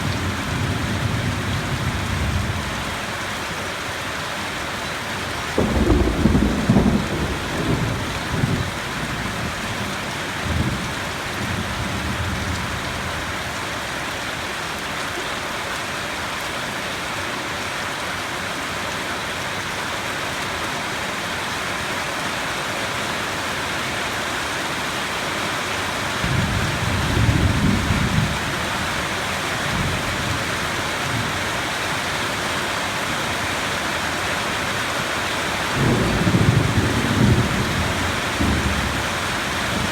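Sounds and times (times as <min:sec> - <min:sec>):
heavy rain: 0:00.0 - 0:39.9
thunder rumbling: 0:05.5 - 0:13.1, 0:26.2 - 0:31.3, 0:35.8 - 0:39.9.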